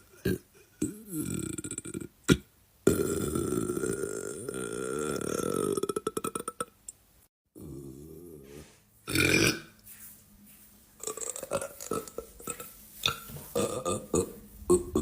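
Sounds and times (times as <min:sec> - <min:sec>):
man burping: 0:00.0 - 0:06.7, 0:09.1 - 0:09.7, 0:11.0 - 0:15.0.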